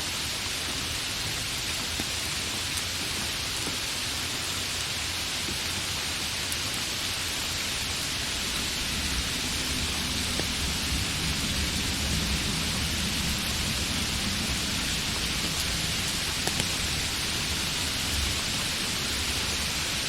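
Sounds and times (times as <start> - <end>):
steady rain hiss: 0.0 - 20.0
low rumble: 7.5 - 20.0.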